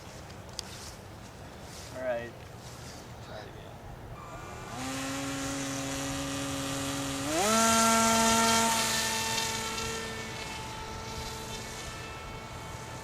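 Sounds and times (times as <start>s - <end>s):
model airplane motor buzzing: 4.2s - 13.0s.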